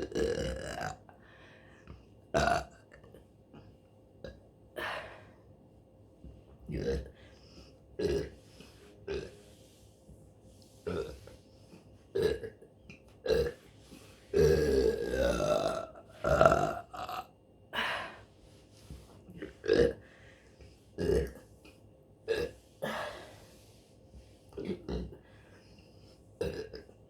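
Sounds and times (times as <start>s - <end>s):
woman burping: 14.4s - 18.2s, 24.6s - 25.2s, 26.4s - 26.9s.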